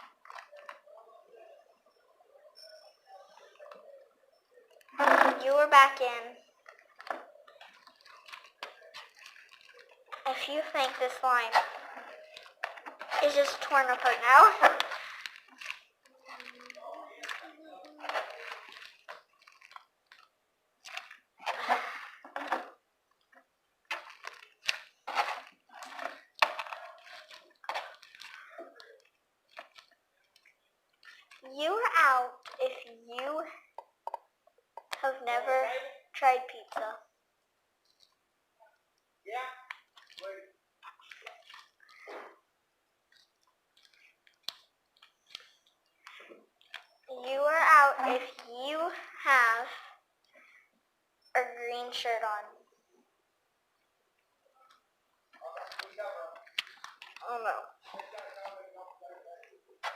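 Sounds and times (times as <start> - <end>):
slime squishing by hand: 4.8 - 35.2, 39.6 - 49.2, 54.6 - 58.7.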